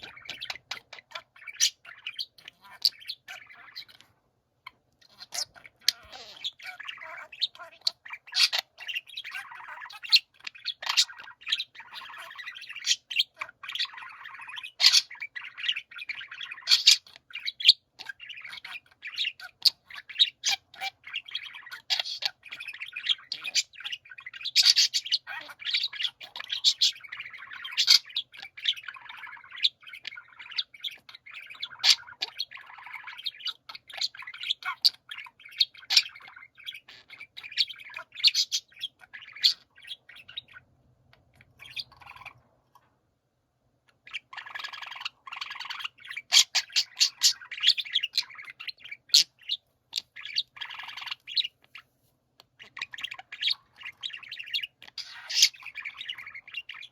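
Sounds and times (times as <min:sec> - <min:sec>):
budgerigars chirping: 0:00.0 - 0:42.9, 0:43.9 - 0:56.9.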